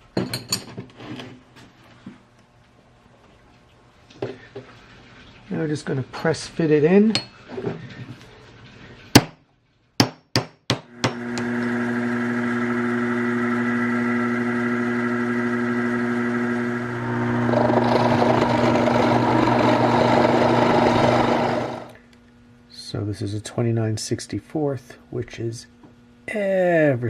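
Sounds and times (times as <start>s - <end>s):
milling machine motor humming: 11.0s - 22.0s.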